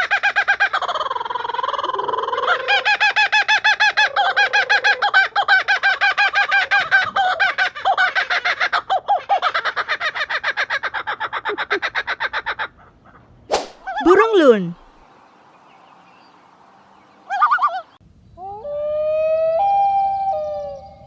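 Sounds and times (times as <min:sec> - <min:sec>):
kookaburra calling: 0:00.0 - 0:15.0, 0:17.3 - 0:21.0.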